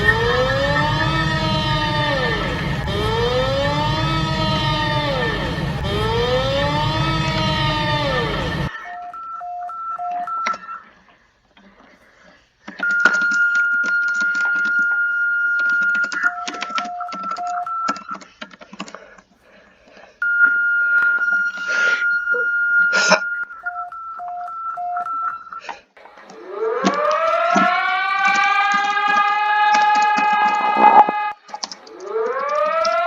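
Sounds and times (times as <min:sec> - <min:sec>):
alert alarm beeps: 0:00.0 - 0:10.9, 0:20.2 - 0:25.6, 0:30.2 - 0:31.3
siren winding up: 0:00.0 - 0:10.9, 0:12.8 - 0:18.2, 0:20.2 - 0:33.0
crackling noise: 0:28.3 - 0:33.0.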